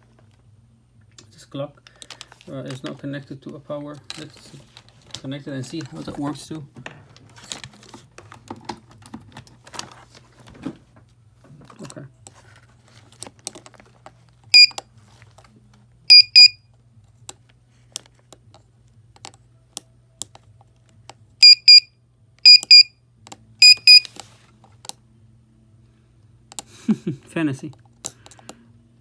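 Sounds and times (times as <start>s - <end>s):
buzzer beeps: 16.1s - 16.6s, 21.4s - 22.9s, 23.6s - 24.1s.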